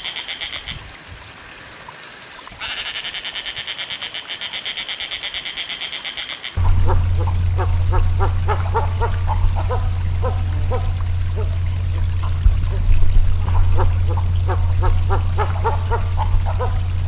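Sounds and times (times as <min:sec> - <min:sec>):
steady low rumble: 0:06.6 - 0:17.0.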